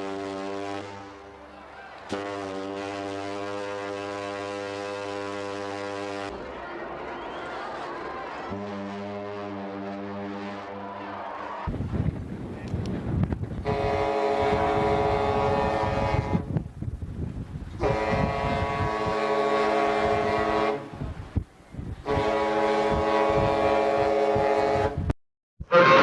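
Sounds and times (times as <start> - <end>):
ship's horn blasts: 0.0 - 6.4, 8.5 - 11.2, 13.6 - 16.6, 17.8 - 21.1, 22.0 - 26.0.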